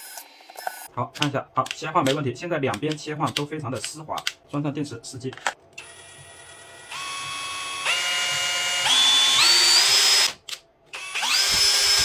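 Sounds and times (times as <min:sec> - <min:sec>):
cordless drill motor whine: 0:05.8 - 0:10.3, 0:10.9 - 0:12.0.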